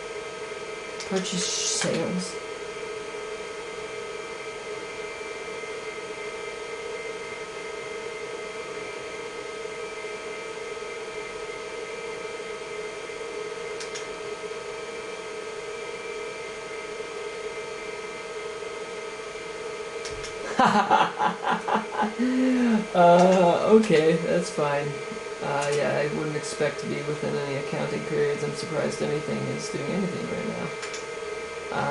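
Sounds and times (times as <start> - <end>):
computer fan and hard drive whir: 0.0 - 31.9.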